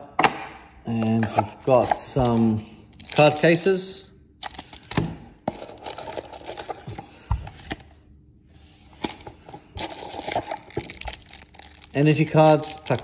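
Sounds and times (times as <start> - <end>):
cardboard packaging rustling: 1.6 - 3.6, 4.4 - 7.9, 8.8 - 13.0.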